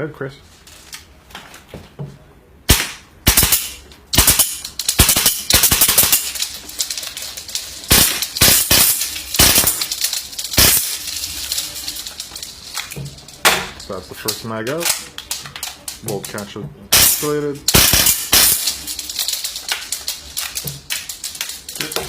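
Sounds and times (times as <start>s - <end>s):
airsoft gun firing: 2.7s - 6.4s, 7.9s - 11.0s, 17.0s - 18.8s.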